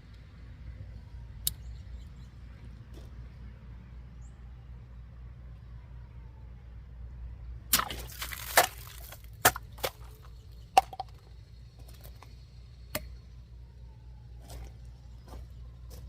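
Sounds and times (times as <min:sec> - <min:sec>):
knife cracking plastic bottle: 0:07.7 - 0:10.2.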